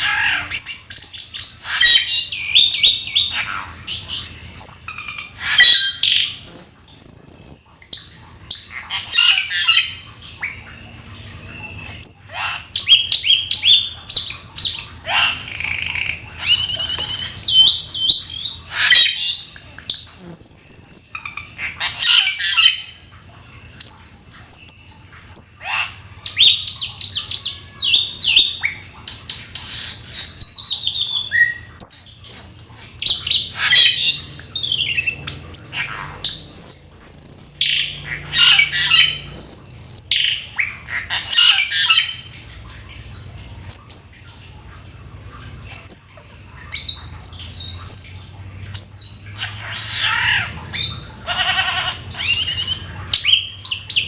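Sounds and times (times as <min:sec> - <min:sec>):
songbird singing whistles and chirps: 0:11.4 - 0:21.2.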